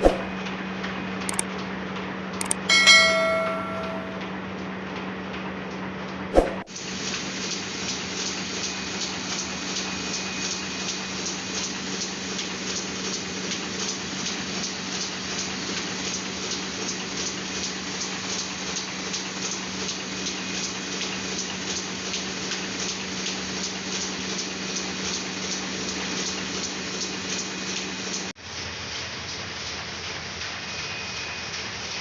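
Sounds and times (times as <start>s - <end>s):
mechanical ticking: 2.4s - 3.1s.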